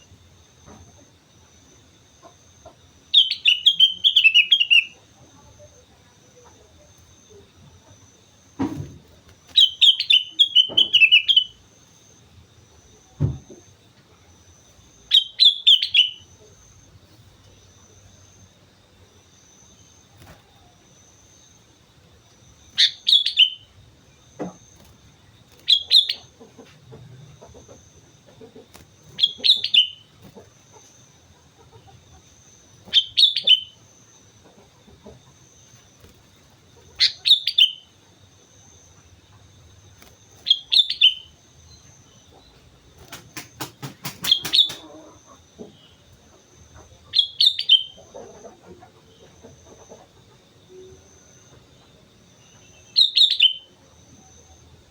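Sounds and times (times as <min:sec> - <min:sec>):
bulbul singing: 0:03.0 - 0:54.9
quick run of clicks: 0:43.0 - 0:44.9.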